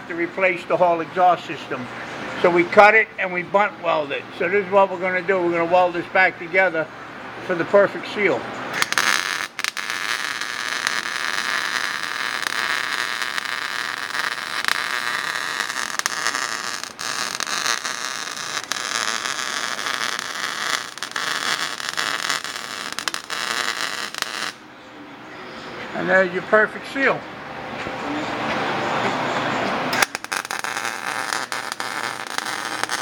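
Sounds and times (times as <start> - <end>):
welding arc crackling: 8.7 - 24.6, 29.9 - 33.0.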